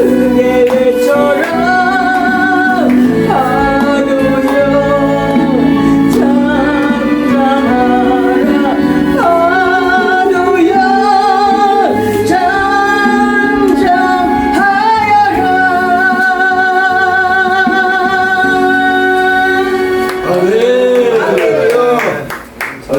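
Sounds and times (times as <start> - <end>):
woman singing gospel: 0.0 - 20.3
instrumental accompaniment: 0.0 - 22.6.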